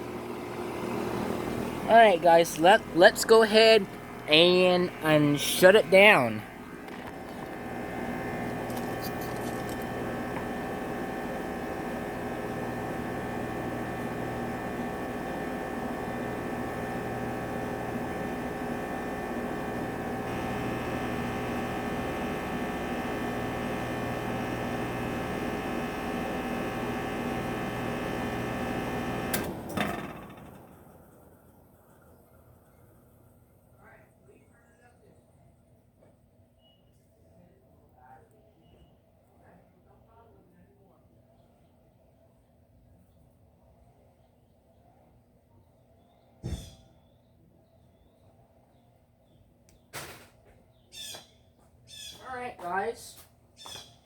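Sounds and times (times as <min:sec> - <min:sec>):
air conditioner shutdown click: 0:00.0 - 0:30.9
air conditioner unit humming: 0:00.0 - 0:36.5, 0:46.0 - 0:54.0.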